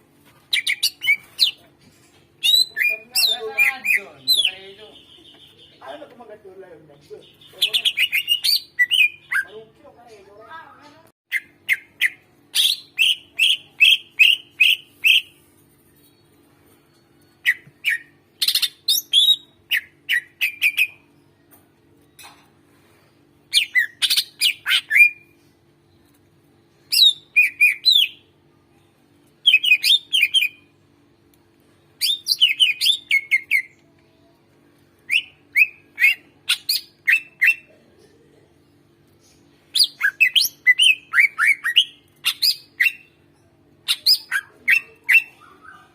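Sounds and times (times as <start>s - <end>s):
bird chattering song: 2.4s - 6.0s, 6.9s - 9.6s.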